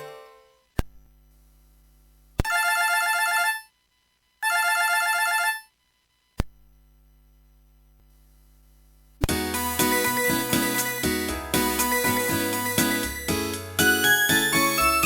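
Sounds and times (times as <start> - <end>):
electronic trill ringtone: 2.5 - 3.7, 4.4 - 5.7.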